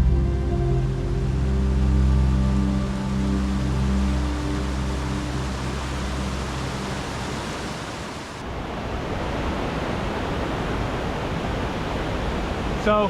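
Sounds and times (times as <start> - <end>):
background music: 0.0 - 7.7
mountain stream rushing: 0.9 - 13.0.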